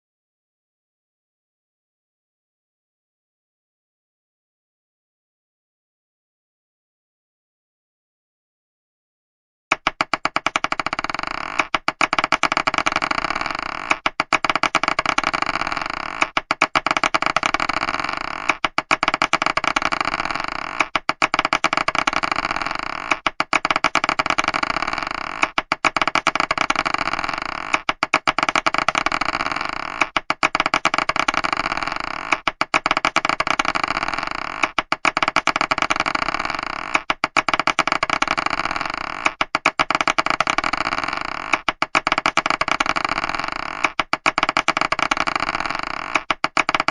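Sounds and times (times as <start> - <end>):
marbles clattering: 9.7 - 46.9.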